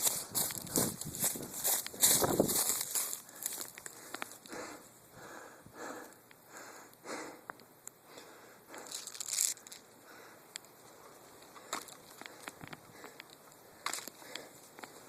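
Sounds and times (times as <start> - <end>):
footsteps crunching dry leaves: 0.0 - 4.5, 8.8 - 9.8.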